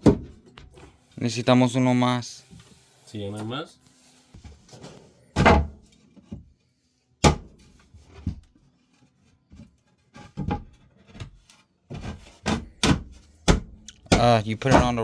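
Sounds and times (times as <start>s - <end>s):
hard objects knocking: 12.4s - 15.0s.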